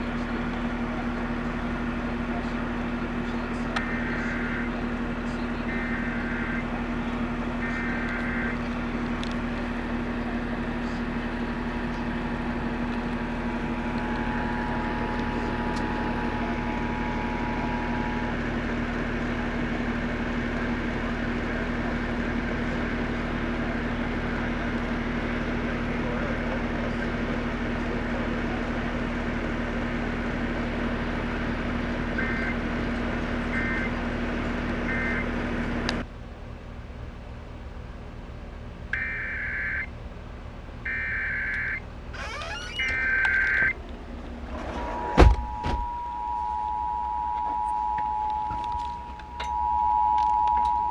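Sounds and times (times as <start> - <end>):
radio static hiss: 3.6 - 6.6
two-tone attention signal: 39.0 - 39.9, 40.9 - 43.7, 44.7 - 50.9
steady hum: 40.8 - 50.9.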